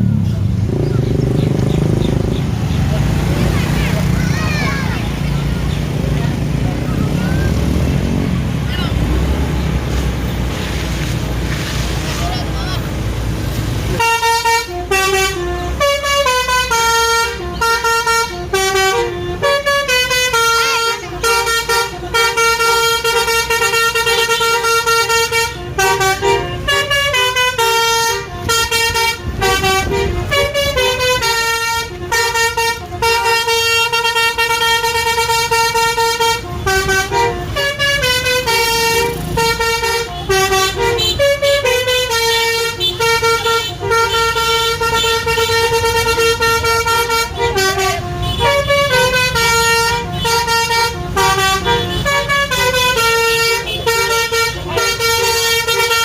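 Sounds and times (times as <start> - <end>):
musical bus air horn tune: 13.8 - 56.0.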